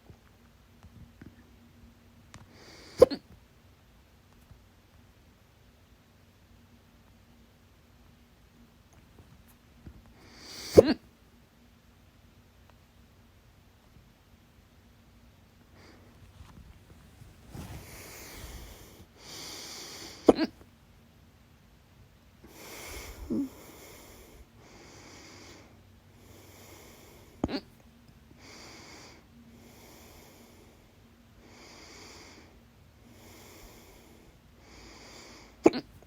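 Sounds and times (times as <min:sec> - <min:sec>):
woman hiccuping: 0:10.7 - 0:11.0, 0:20.3 - 0:20.6, 0:27.4 - 0:27.7, 0:35.6 - 0:35.9
woman breathing: 0:15.8 - 0:20.4, 0:22.4 - 0:27.6, 0:28.3 - 0:35.7.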